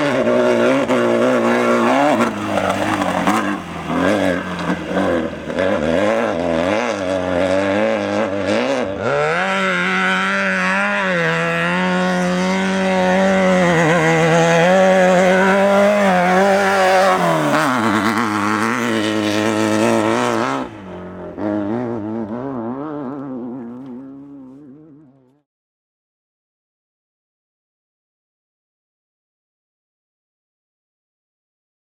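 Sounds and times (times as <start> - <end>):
buggy engine revving: 0.0 - 25.4.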